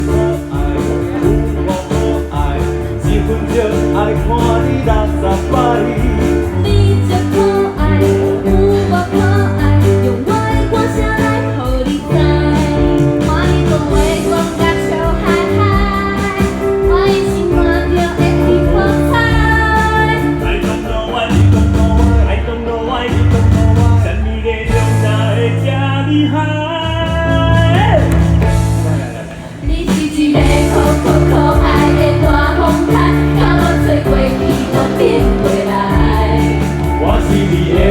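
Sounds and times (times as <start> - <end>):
live band playing upbeat song: 0.0 - 37.9.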